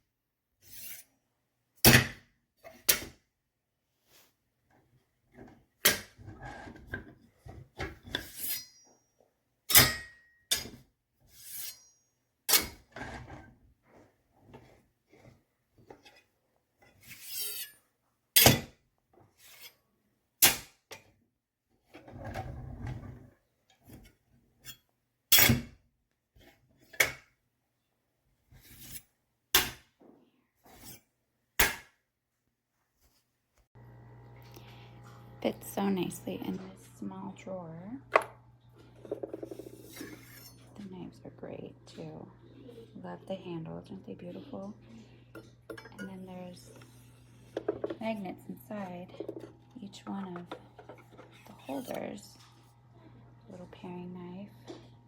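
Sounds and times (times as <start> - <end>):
knives sliding and rubbing: 0.6 - 1.1, 8.2 - 8.8, 11.3 - 12.8, 17.0 - 17.8, 19.4 - 19.8, 30.7 - 31.0, 39.4 - 40.7.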